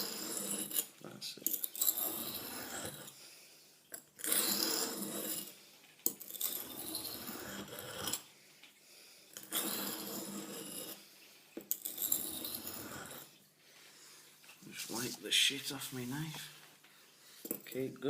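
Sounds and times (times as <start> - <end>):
knife rasping on sharpening stone: 0.0 - 0.9, 1.5 - 3.2, 4.2 - 8.3, 9.4 - 11.1, 11.7 - 13.4.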